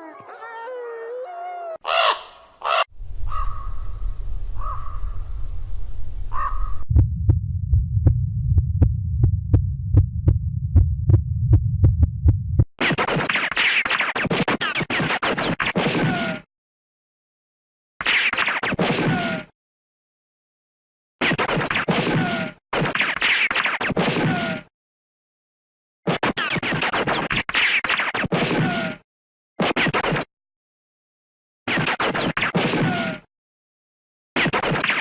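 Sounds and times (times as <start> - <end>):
brief animal calls: 1.6 - 3.8, 6.3 - 6.8
low steady hum: 5.2 - 12.7
low throbbing with sharp ticks: 6.9 - 12.7.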